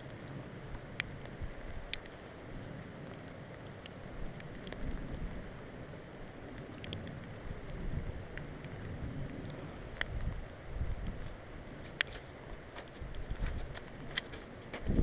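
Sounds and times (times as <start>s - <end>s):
faint sharp ticks: 0.0s - 2.2s, 6.5s - 12.3s
wind buffeting microphone: 0.0s - 15.0s.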